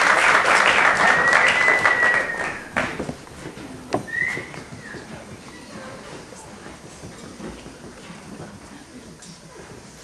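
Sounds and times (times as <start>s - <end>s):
audience applause: 0.0s - 3.8s
high whistle: 1.0s - 3.0s, 4.0s - 5.0s.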